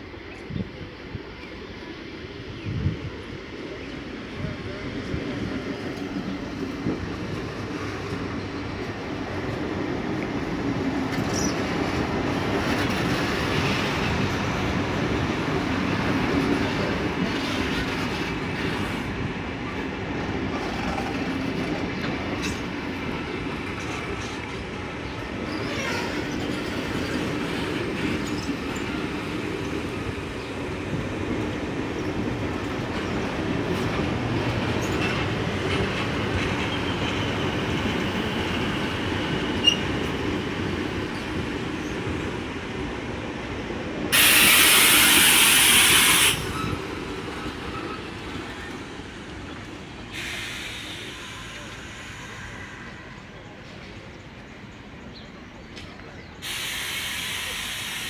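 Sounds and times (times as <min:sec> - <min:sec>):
train wheels rumbling on rails: 0:00.0 - 0:58.0
faint wheel squeal: 0:25.4 - 0:26.8, 0:39.6 - 0:40.0
loud hiss: 0:44.1 - 0:47.0, 0:50.1 - 0:52.9, 0:56.4 - 0:58.0.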